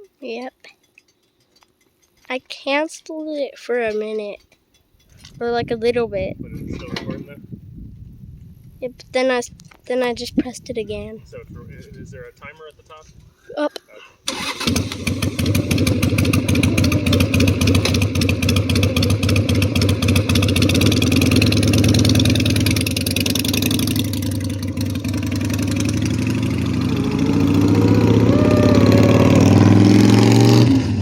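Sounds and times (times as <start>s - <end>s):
motorcycle engine idling: 14.3s - 30.0s.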